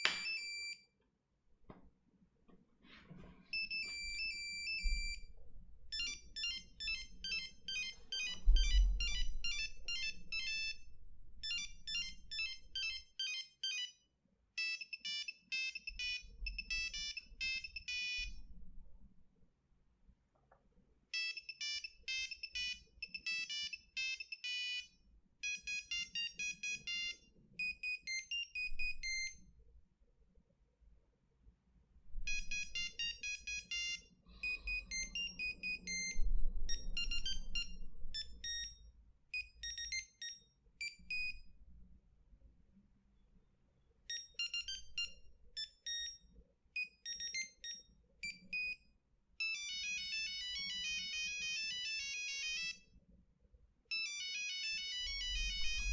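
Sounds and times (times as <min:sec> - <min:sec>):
monophonic phone ringtone melodies: 0:00.0 - 0:00.9, 0:03.5 - 0:18.4, 0:21.1 - 0:29.4, 0:32.3 - 0:38.8, 0:39.4 - 0:41.5, 0:44.1 - 0:46.2, 0:46.8 - 0:48.8, 0:49.4 - 0:52.9, 0:53.9 - 0:55.9.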